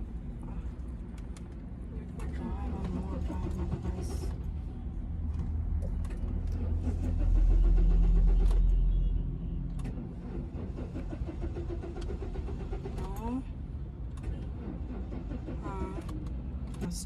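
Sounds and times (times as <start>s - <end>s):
car engine cranking: 5.8s - 9.0s, 9.7s - 17.0s.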